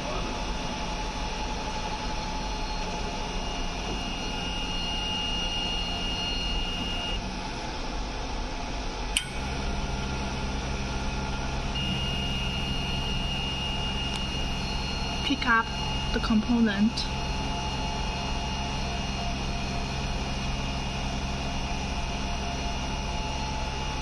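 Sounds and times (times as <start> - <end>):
high whine: 0.0 - 7.9, 8.6 - 24.0
machine fan hum: 0.0 - 24.0
sharp click: 9.1 - 9.4.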